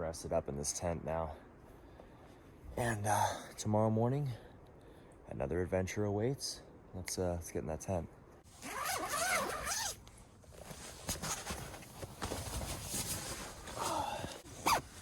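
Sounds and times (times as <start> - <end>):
tent zipper rasping: 8.6 - 10.0, 13.6 - 15.0.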